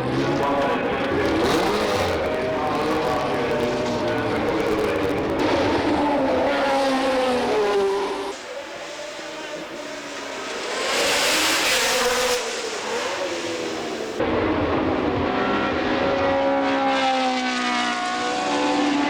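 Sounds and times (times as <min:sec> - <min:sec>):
race car engine: 0:00.0 - 0:19.0
broad rushing noise: 0:09.3 - 0:14.2.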